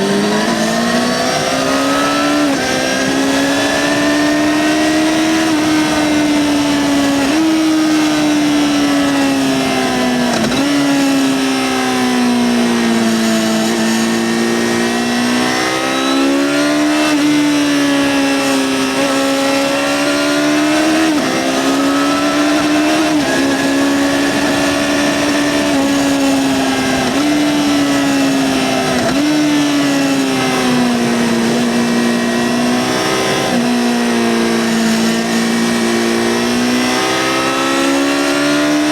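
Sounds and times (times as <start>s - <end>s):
motorcycle engine running: 16.7s - 38.1s.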